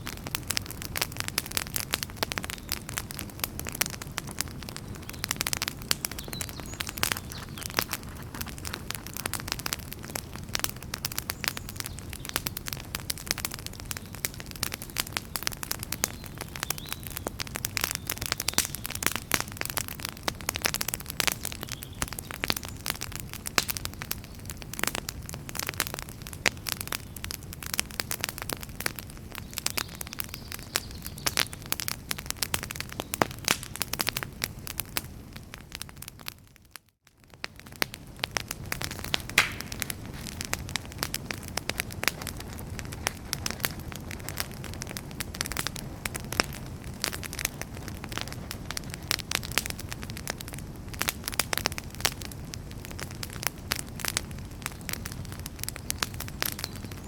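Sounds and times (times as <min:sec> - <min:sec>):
low rush of flame: 0:00.0 - 0:11.3, 0:37.5 - 0:55.7
wood fire crackling and popping: 0:00.0 - 0:57.0.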